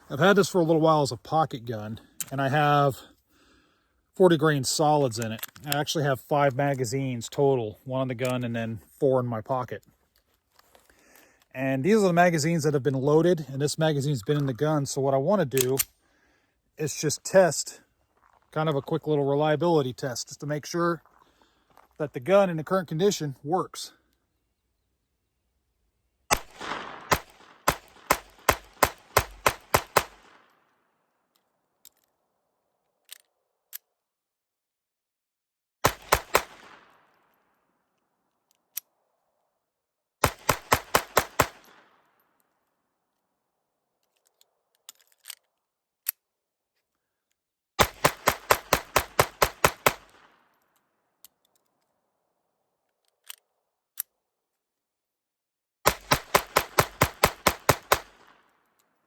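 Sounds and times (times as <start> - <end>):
pistol shots in rapid strings: 26.3 - 30.3, 47.8 - 50.1.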